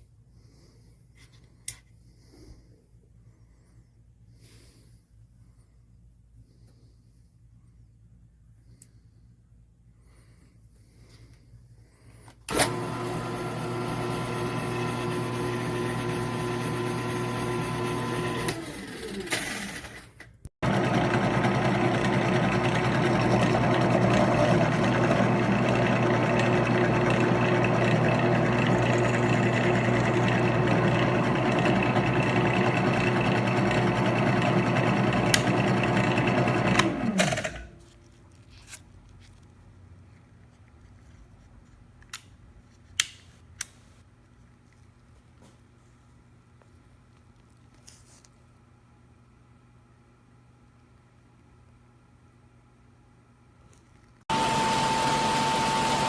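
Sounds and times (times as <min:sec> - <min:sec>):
drill press motor humming: 0:12.5 - 0:20.0, 0:20.6 - 0:37.8, 0:54.3 - 0:56.0.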